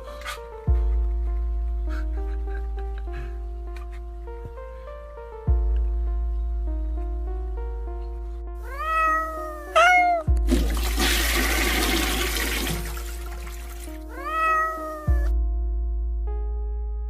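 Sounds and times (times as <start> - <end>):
soft piano music: 0.0 - 17.0
cat meowing: 8.6 - 10.3, 14.1 - 15.3
rushing water-like noise: 10.5 - 14.1.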